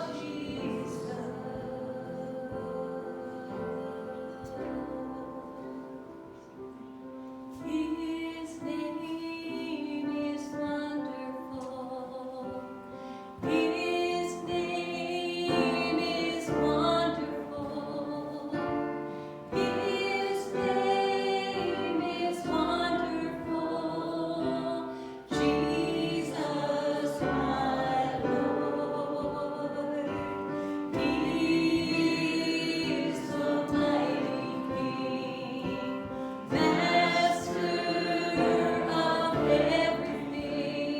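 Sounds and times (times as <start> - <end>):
choir singing a hymn: 0.0 - 40.9
instrumental accompaniment: 13.4 - 40.9.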